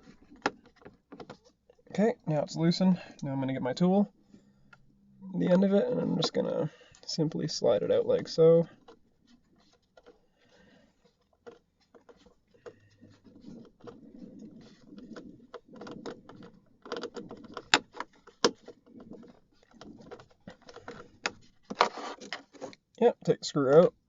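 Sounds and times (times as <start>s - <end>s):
screwdriver rubbing and scraping: 5.7s - 22.8s.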